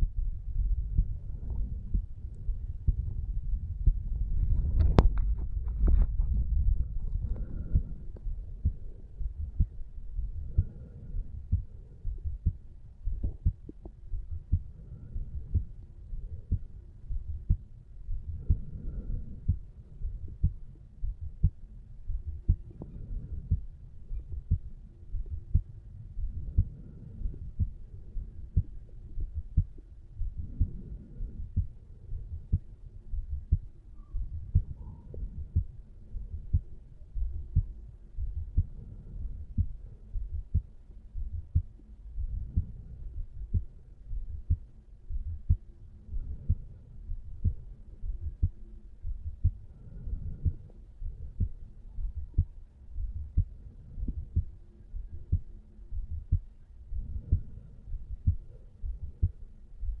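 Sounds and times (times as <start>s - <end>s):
heartbeat thumps: 0.0s - 60.0s.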